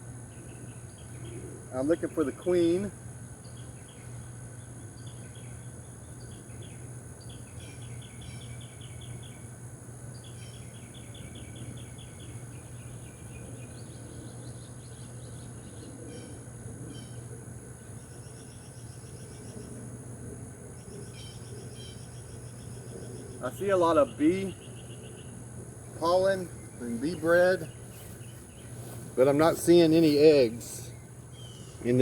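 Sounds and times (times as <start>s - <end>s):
insects trilling: 0.0s - 32.0s
low steady hum: 0.0s - 32.0s
rapid pulsed insect chirps: 0.0s - 32.0s.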